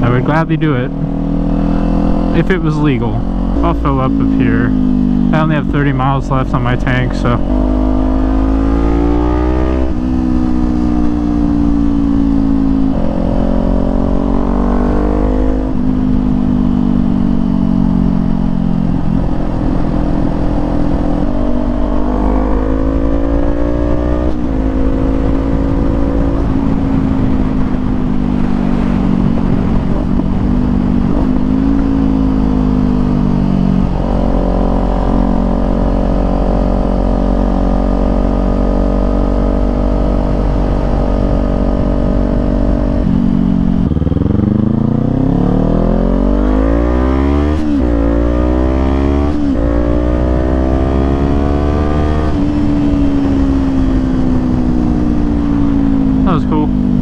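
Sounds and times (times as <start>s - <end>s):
motorcycle engine accelerating: 0.0s - 57.0s
wind rumble: 0.0s - 57.0s.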